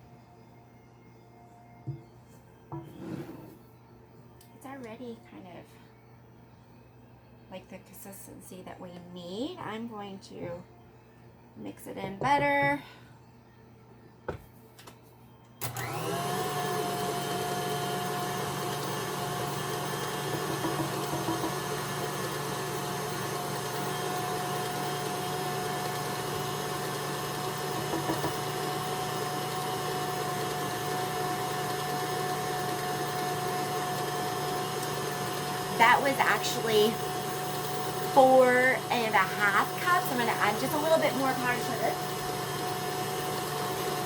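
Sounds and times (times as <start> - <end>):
electric stand mixer whining: 15.6 - 44.0.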